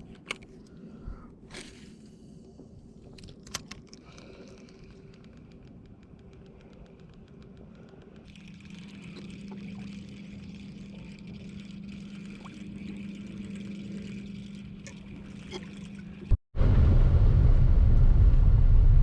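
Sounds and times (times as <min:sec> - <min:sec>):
light clicks: 0:03.0 - 0:08.3
motor humming: 0:04.6 - 0:16.4
loud low rumble: 0:16.6 - 0:19.0.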